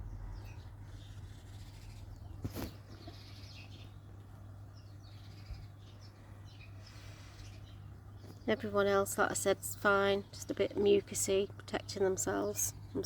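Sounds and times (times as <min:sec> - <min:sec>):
faint bird chirps: 0:00.0 - 0:08.7
brief rustle: 0:01.0 - 0:03.2.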